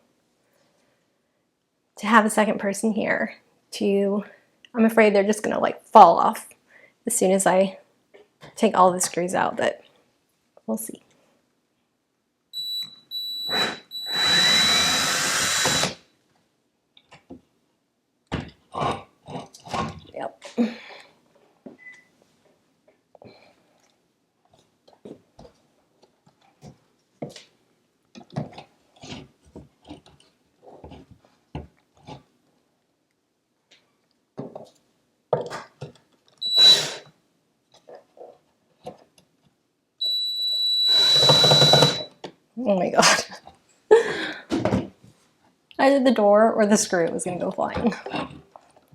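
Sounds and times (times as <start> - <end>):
power drill whining: 13.2 - 16.0, 36.4 - 37.1, 40.0 - 42.1.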